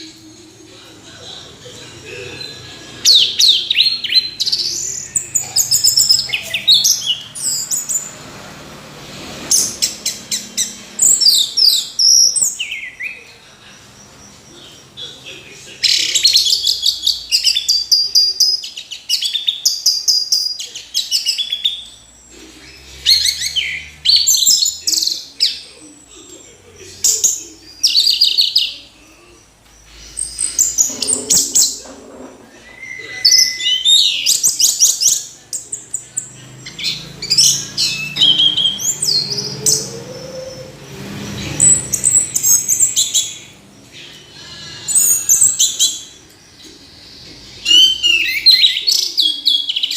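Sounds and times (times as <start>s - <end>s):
thrush singing: 20.8s - 49.9s.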